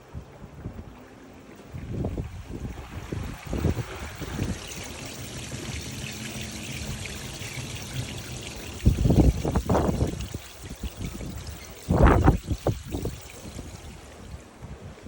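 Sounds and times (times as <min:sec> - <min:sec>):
water pouring and splashing: 0:01.6 - 0:14.4.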